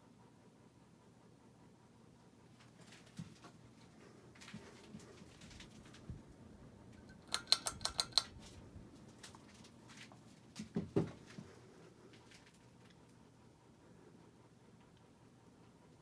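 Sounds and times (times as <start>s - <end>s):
ceiling fan humming: 0.0s - 16.0s
sharp metallic clicks: 7.0s - 8.4s.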